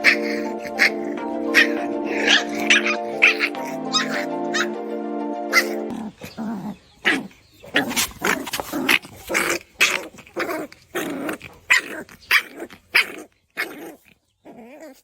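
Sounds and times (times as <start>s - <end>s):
dog barking: 0.0s - 4.7s.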